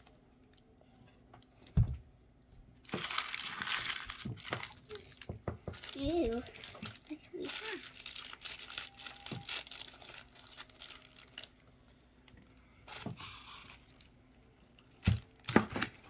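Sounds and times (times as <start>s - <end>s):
plastic wrapper crinkling and tearing: 2.8s - 11.6s, 12.2s - 16.0s.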